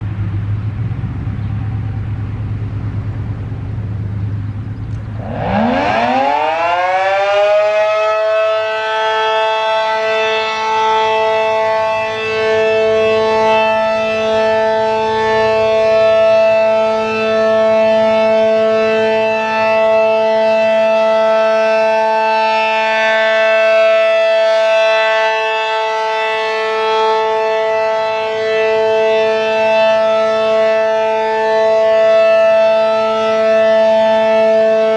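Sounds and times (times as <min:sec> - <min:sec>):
low rumble: 0:00.0 - 0:06.0
civil defense siren wailing: 0:00.0 - 0:34.9.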